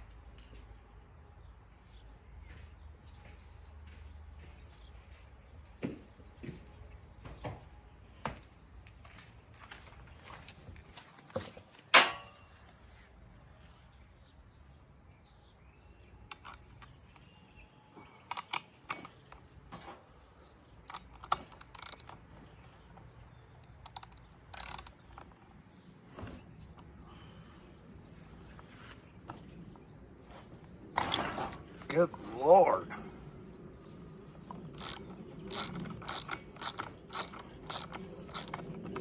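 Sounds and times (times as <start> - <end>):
hand tools clicking and scraping: 20.8 - 22.2, 22.9 - 25.4, 34.8 - 39.0.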